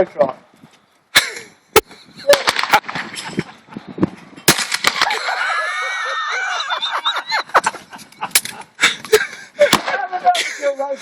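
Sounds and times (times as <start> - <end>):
shotgun bang: 4.5 - 5.1.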